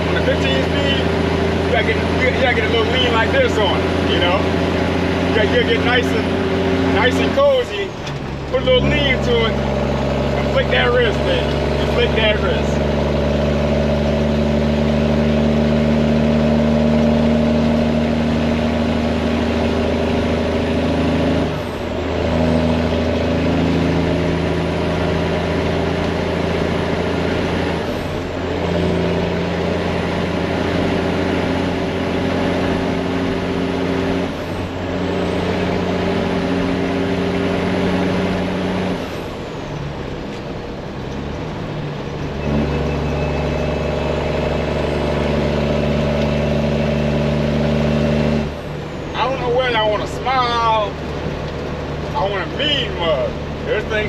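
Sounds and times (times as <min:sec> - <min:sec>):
diesel truck engine shifting gears: 0:00.0 - 0:54.0
turbo whistle: 0:42.4 - 0:44.4.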